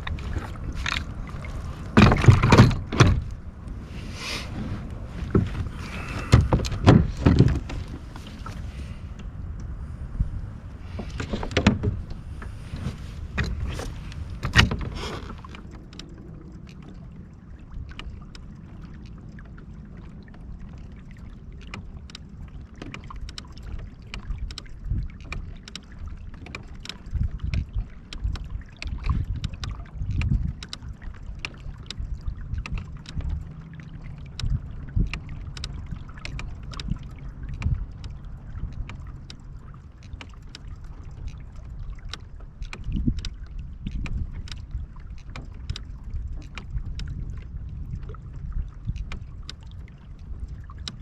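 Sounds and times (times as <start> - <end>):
low rumble: 0.0 - 20.4
light clicks and taps: 21.6 - 51.0.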